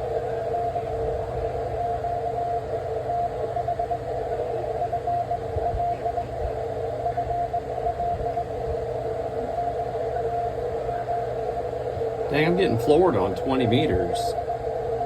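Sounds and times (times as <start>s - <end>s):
radio hiss and static: 0.0s - 15.0s
morse code beeping tones: 12.3s - 14.4s.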